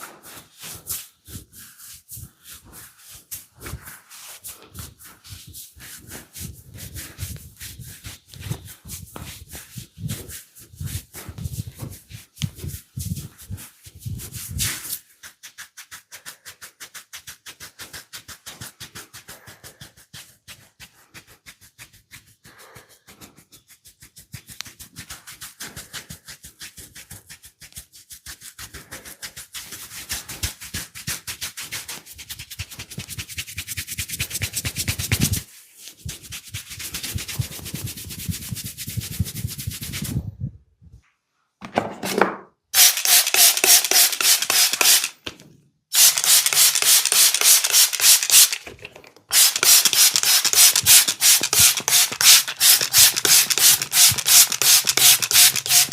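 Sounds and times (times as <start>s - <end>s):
hands rubbing oiled skin: 0.0s - 40.2s, 42.8s - 45.2s, 46.0s - 48.7s, 49.3s - 55.9s.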